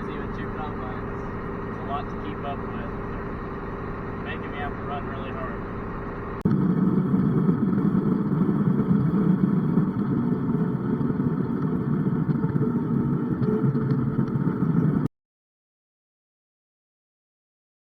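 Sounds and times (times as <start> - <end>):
farm machinery engine running: 0.0 - 15.1.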